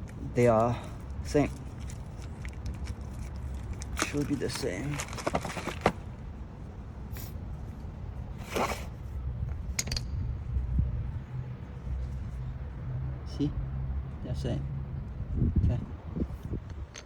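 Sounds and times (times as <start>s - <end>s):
brake pads scraping and clicking: 0.0s - 6.1s, 8.4s - 9.0s
low steady rumble: 0.0s - 17.0s.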